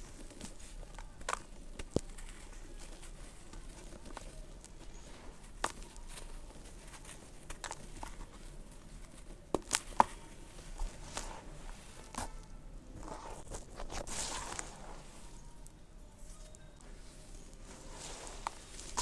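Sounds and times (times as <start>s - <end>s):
dirt lumps crumbling onto floor: 17.9s - 19.0s.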